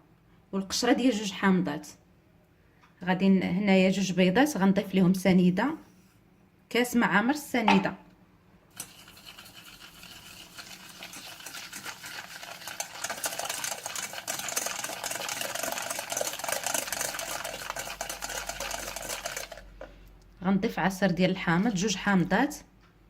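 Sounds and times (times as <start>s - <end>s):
whisking in a bowl: 8.8s - 19.7s.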